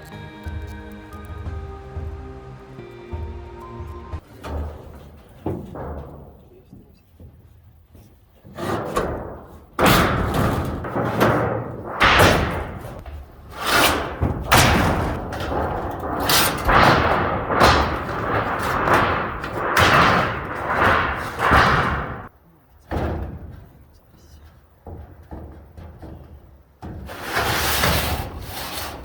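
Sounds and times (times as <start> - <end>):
heavy ringing knocks: 9.0 - 22.3.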